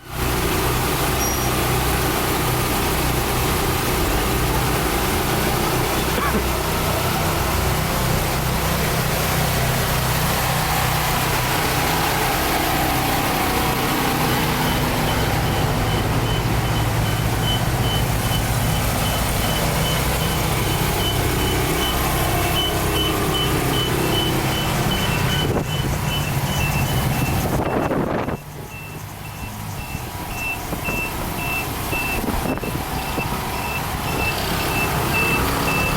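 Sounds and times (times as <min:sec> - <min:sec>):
large vehicle engine running: 0:00.0 - 0:35.9
reversing alarm beeps: 0:14.4 - 0:35.9.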